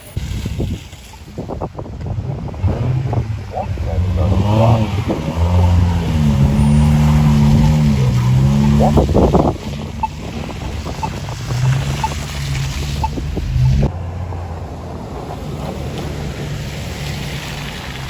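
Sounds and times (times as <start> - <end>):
car engine running: 2.4 - 14.2.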